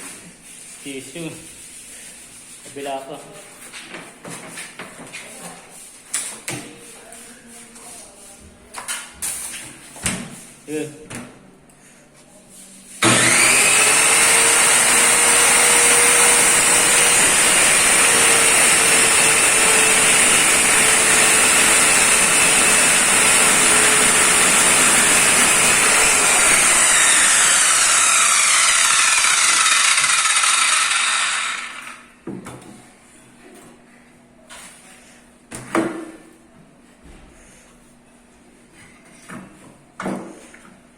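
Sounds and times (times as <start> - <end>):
circular saw motor whining: 13.0 - 32.0.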